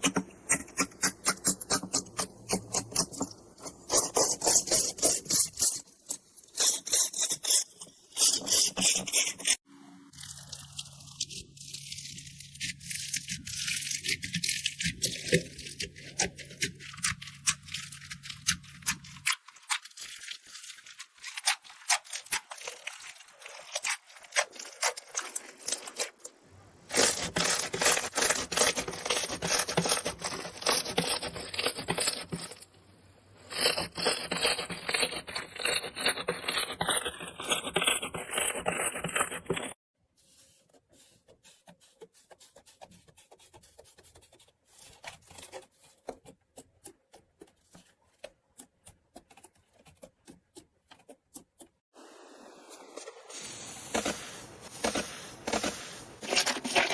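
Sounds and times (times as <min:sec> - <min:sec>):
dry soap crackling and scraping: 0:00.0 - 0:52.0, 0:52.6 - 0:56.9.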